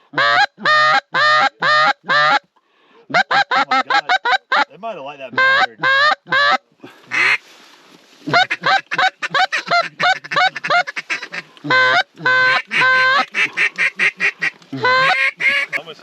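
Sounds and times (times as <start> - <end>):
goose honking: 0.2 - 2.4, 5.3 - 7.4, 8.3 - 15.8.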